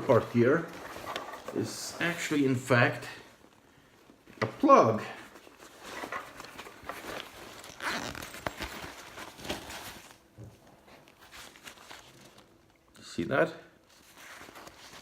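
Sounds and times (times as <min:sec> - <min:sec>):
zipper and fabric rasping: 0:07.5 - 0:09.6.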